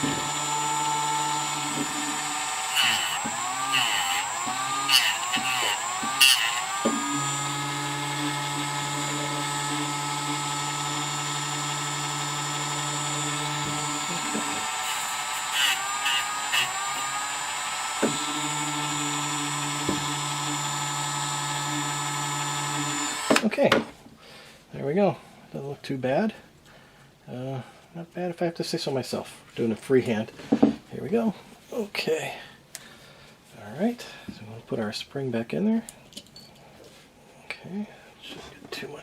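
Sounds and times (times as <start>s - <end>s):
power tool motor whine: 0.0s - 23.4s.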